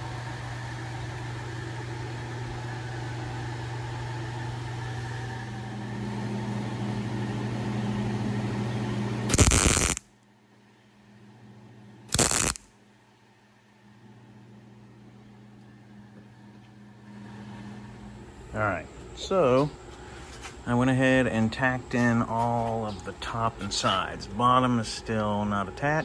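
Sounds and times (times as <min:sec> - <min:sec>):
steady hum: 0:00.0 - 0:26.0
welding crackle: 0:09.3 - 0:10.1, 0:12.1 - 0:12.7.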